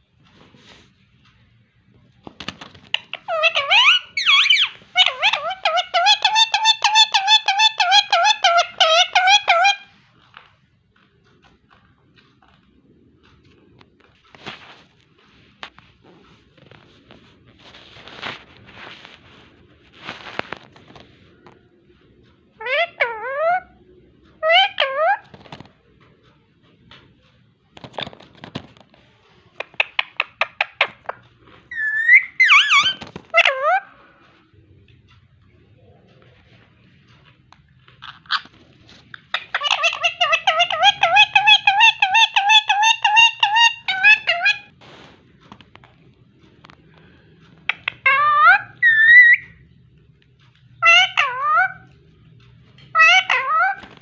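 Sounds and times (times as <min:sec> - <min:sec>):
parrot chirps: 0:02.9 - 0:10.0, 0:22.6 - 0:25.4, 0:29.6 - 0:34.0, 0:37.9 - 0:44.7, 0:47.6 - 0:49.6, 0:50.5 - 0:52.0, 0:52.9 - 0:54.0
parrot whistling: 0:03.0 - 0:09.9, 0:31.7 - 0:33.9, 0:47.7 - 0:49.6.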